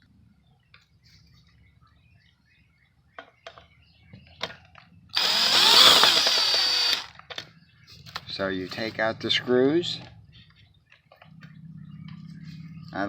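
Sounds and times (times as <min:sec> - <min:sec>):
cordless drill spinning: 0:05.2 - 0:07.1.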